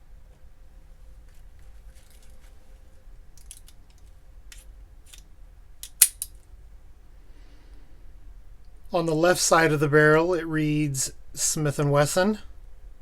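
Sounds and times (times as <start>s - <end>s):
revolver handling clicks: 3.4s - 6.4s
sharp loud click: 5.8s - 6.4s.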